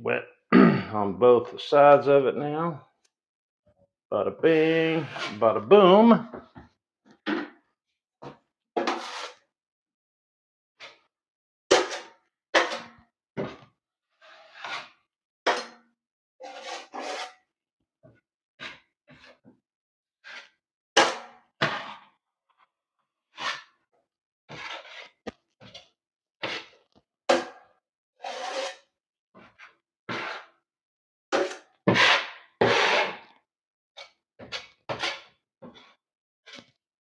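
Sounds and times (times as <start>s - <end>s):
drywall knife scraping compound: 4.5s - 6.5s, 8.8s - 9.6s, 10.8s - 11.1s, 11.7s - 15.8s, 16.4s - 17.5s, 18.6s - 19.5s, 20.2s - 22.2s, 23.3s - 30.7s, 31.4s - 33.4s, 34.0s - 36.8s.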